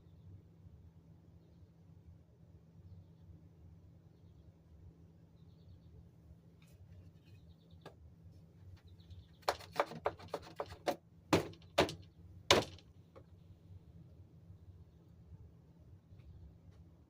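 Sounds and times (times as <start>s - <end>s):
sharp clicks and knocks: 9.4s - 13.3s.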